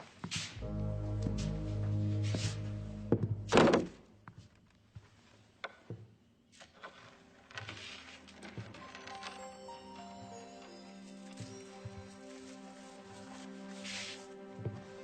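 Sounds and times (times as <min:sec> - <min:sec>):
music: 0:00.6 - 0:04.0, 0:07.2 - 0:15.0.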